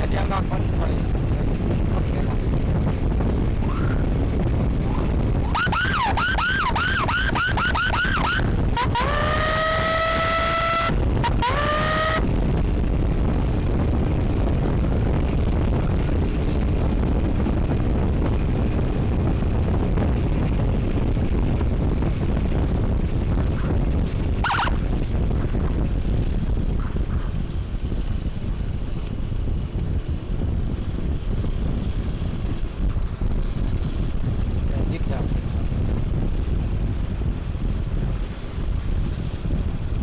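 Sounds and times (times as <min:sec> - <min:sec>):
wind rushing over microphone: 0:00.0 - 0:40.0
electronic emergency siren: 0:05.0 - 0:12.2, 0:24.4 - 0:24.8.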